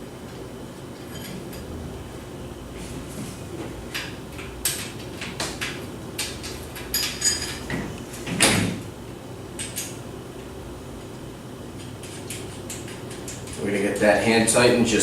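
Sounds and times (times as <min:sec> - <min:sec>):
steel parts clinking and knocking: 0:04.0 - 0:07.8.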